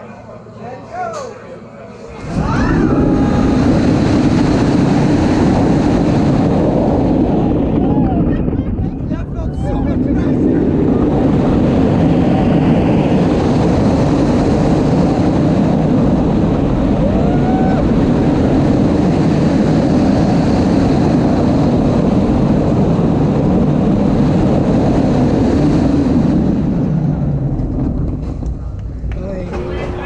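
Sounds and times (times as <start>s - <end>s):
roller coaster train on track: 0.0s - 30.0s
rushing wind: 2.0s - 30.0s.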